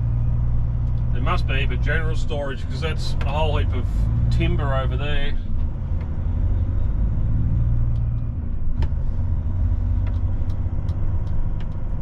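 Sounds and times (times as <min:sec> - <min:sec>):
diesel truck engine rumbling: 0:00.0 - 0:12.0
light ticks and rattles: 0:07.4 - 0:12.0.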